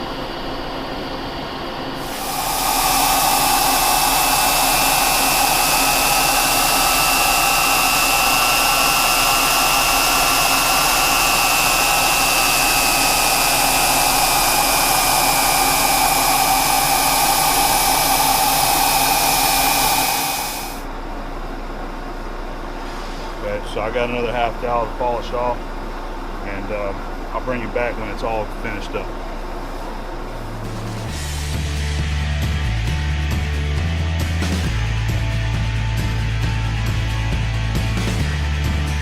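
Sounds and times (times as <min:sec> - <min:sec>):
lathe humming: 0:00.0 - 0:20.9
thin steady whine: 0:00.0 - 0:31.5
hiss of coolant spray: 0:02.0 - 0:20.8.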